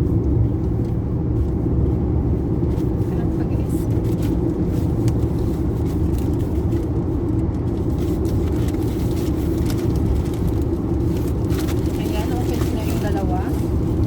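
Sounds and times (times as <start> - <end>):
car interior rumble: 0.0 - 14.0.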